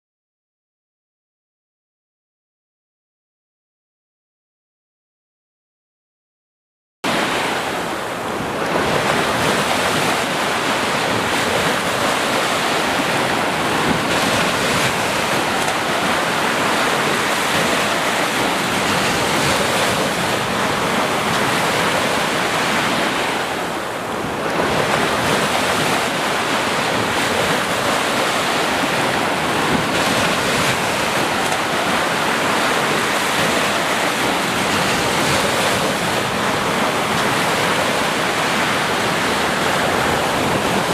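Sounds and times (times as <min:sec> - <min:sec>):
waves washing on shore: 0:07.1 - 0:40.9.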